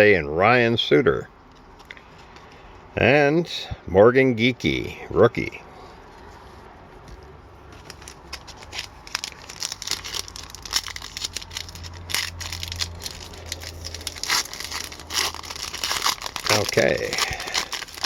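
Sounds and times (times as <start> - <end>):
wrapper crinkling and tearing: 7.8 - 18.0.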